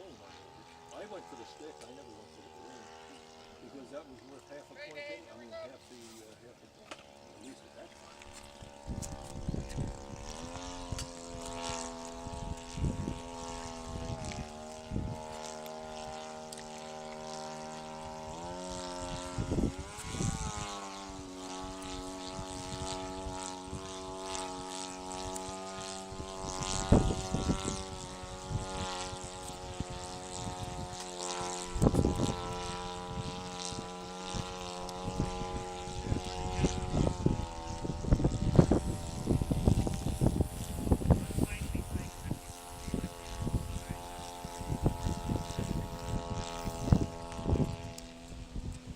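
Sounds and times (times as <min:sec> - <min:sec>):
model airplane engine droning: 0:00.0 - 0:48.9
wind buffeting microphone: 0:08.4 - 0:16.3, 0:17.8 - 0:48.9.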